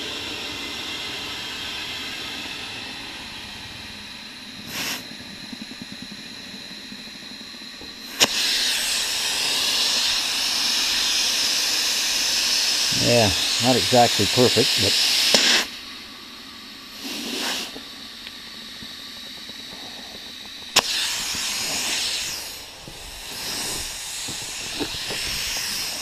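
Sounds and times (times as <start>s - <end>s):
compressed air hissing: 4.6s - 5.2s, 8.0s - 26.0s
sharp snap: 15.2s - 15.7s, 20.7s - 21.5s.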